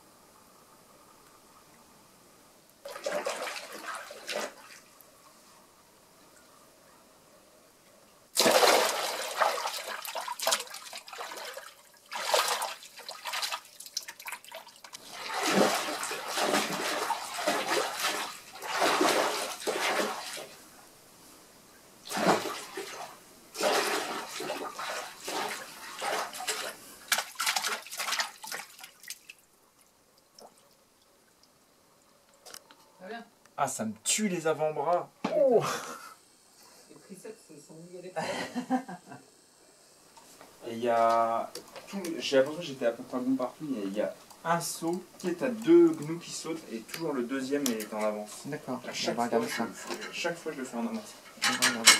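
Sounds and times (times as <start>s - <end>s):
water splashing in tub: 2.8s - 4.9s, 8.4s - 20.6s, 22.0s - 29.4s.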